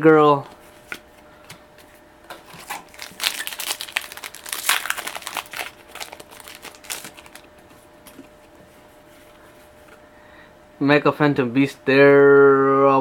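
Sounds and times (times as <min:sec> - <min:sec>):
foil wrapper crinkling: 0:02.4 - 0:07.5.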